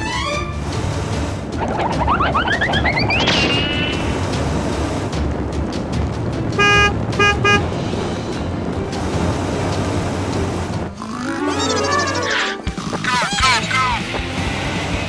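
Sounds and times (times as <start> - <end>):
low steady rumble: 0.0 - 12.3
rising pitched sound: 1.6 - 4.4, 10.7 - 13.0
cartoon vehicle horn honking: 6.5 - 7.8, 11.3 - 12.8.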